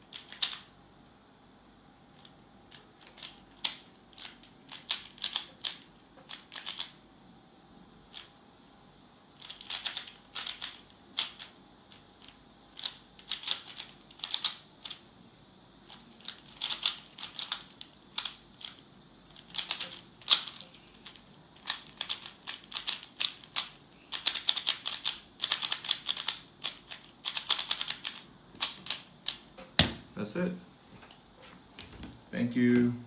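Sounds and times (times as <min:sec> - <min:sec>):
puzzle cube layers clicking: 0:19.4 - 0:29.4.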